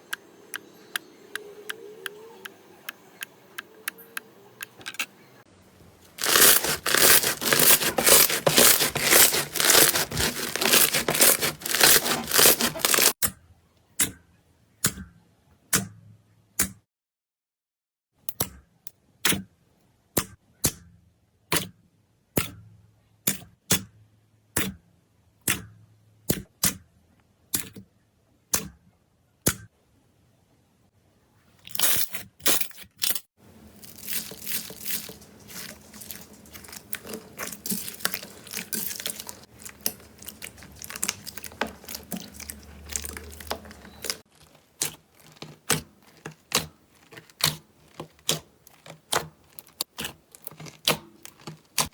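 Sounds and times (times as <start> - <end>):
slime crunchy crackling: 6.2 - 13.2, 33.6 - 51.9
slime popping: 34.0 - 51.9.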